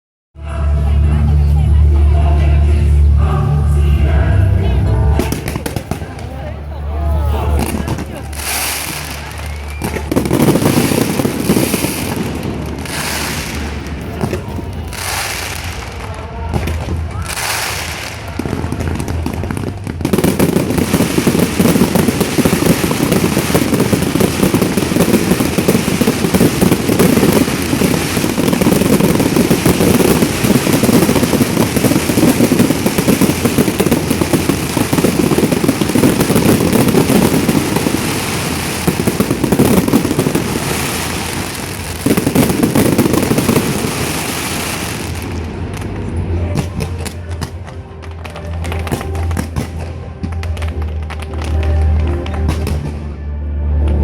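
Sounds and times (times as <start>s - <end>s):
fireworks bangs and crackles: 4.8s - 53.2s.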